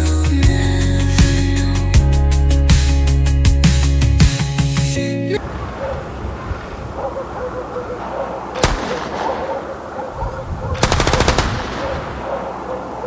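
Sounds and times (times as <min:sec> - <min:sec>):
steady background noise: 0:05.4 - 0:13.0
automatic gunfire burst: 0:08.6 - 0:09.6, 0:10.8 - 0:12.6
single gunshot: 0:08.6 - 0:09.9, 0:10.8 - 0:12.6.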